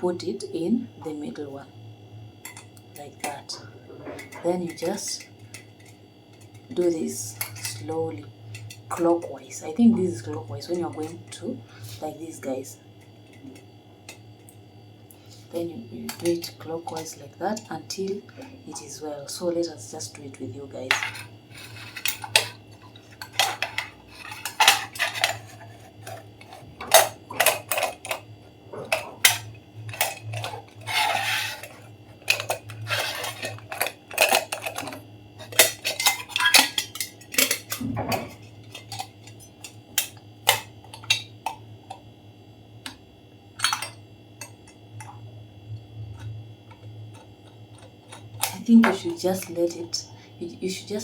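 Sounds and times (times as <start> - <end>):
metal pot parts clinking: 20.9 - 28.2, 28.9 - 41.6, 43.6 - 44.6.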